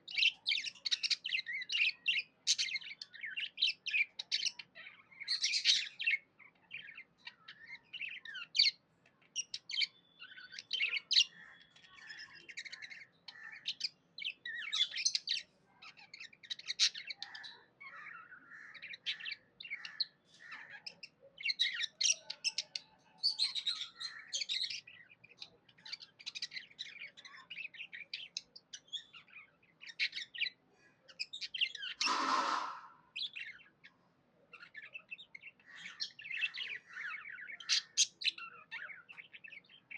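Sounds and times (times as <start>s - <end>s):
harsh bird call: 31.8s - 33.5s.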